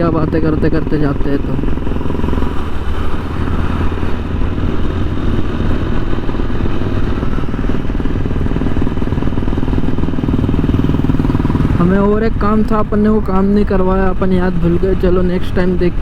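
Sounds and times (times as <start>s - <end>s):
motorcycle engine running: 0.0s - 16.0s
road and wind noise: 0.0s - 16.0s.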